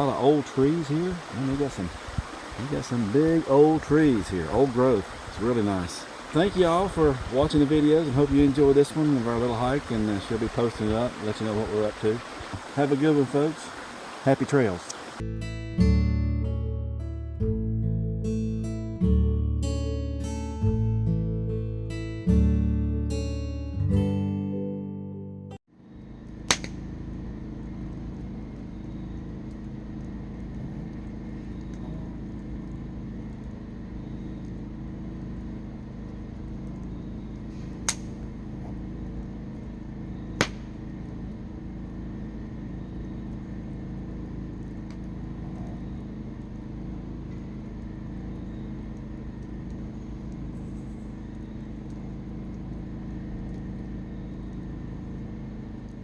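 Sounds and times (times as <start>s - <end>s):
waterfall rushing: 0.0s - 8.2s, 8.9s - 15.2s
sharp clicks: 37.8s - 38.1s.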